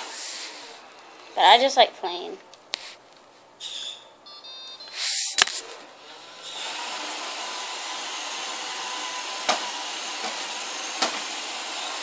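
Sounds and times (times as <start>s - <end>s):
robot vacuum running: 6.0s - 12.0s.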